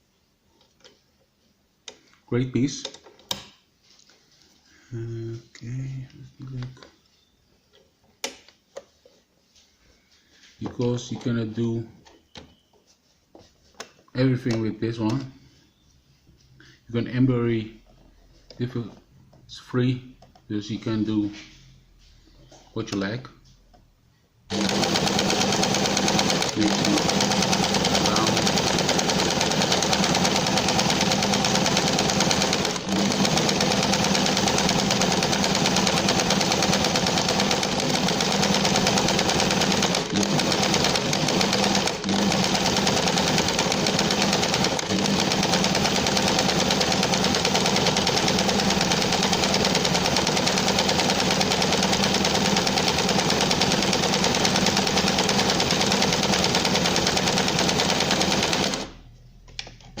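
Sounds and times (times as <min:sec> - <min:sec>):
sewing machine running fast: 0:24.5 - 0:59.0.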